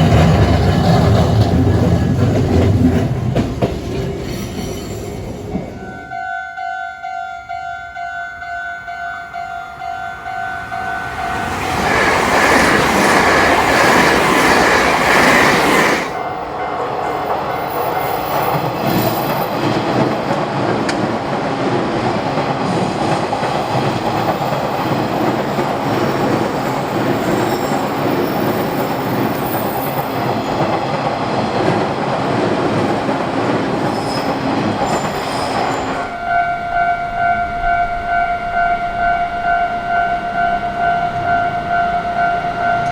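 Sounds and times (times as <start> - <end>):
train wheel clatter: 0.0 - 5.8, 9.9 - 16.2, 17.2 - 36.2
electric train passing: 0.0 - 42.9
railroad crossing bell clanging: 4.1 - 20.3, 33.8 - 42.9.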